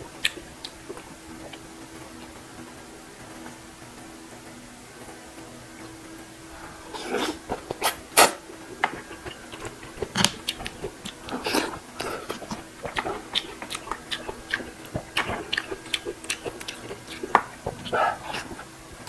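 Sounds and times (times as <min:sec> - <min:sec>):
wet chewing smacks: 0:00.0 - 0:02.4, 0:06.6 - 0:18.8
mouth clicks: 0:00.0 - 0:02.5, 0:06.5 - 0:19.0.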